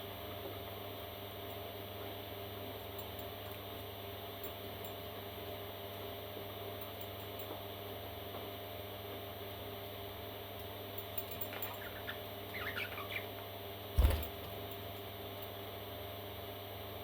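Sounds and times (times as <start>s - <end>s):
steady electrical hum: 0.0s - 17.0s
parrot chicks chirping: 11.5s - 13.4s, 14.0s - 14.5s.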